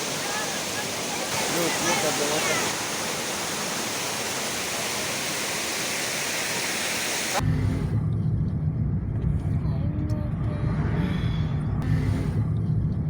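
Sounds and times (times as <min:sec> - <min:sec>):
waterfall roaring: 0:00.0 - 0:07.4
low rumble: 0:07.4 - 0:13.0.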